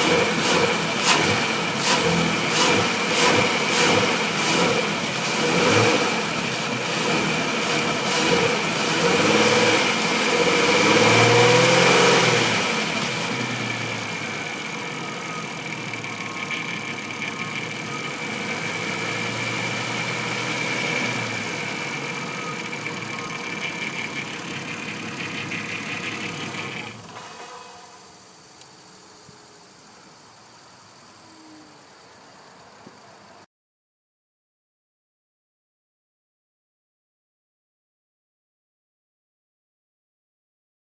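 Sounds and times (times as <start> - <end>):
van engine revving and idling: 0.0 - 27.6.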